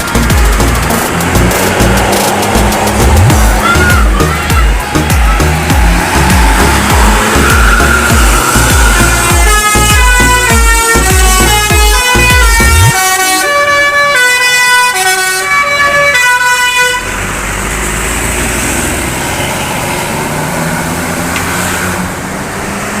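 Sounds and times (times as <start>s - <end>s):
bus engine rumble: 0.0s - 12.9s, 15.1s - 23.0s
road noise: 0.0s - 23.0s
bus melody horn playing a tune: 3.4s - 17.2s.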